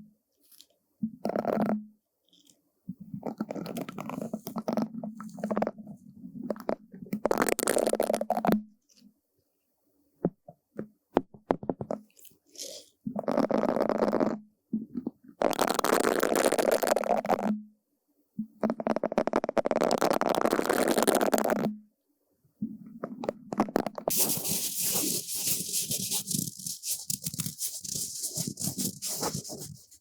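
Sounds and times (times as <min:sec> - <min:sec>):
brush scratching a surface: 0:24.1 - 0:30.0.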